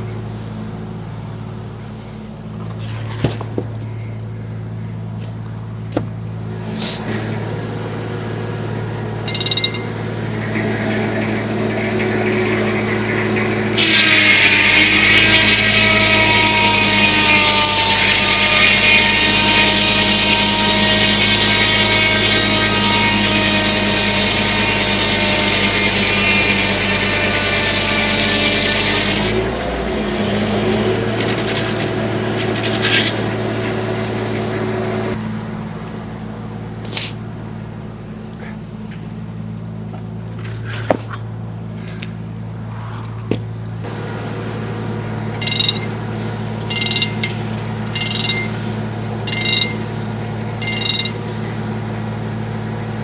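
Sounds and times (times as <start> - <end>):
tractor engine humming: 0.0 - 42.6, 43.4 - 53.0
circular saw cutting log: 6.6 - 35.2, 43.8 - 53.0.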